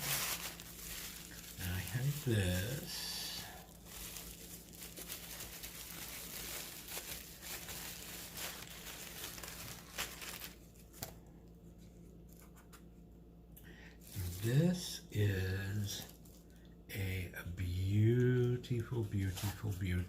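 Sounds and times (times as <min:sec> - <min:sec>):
packaging crinkling and tearing: 0:00.0 - 0:11.2, 0:14.0 - 0:15.0.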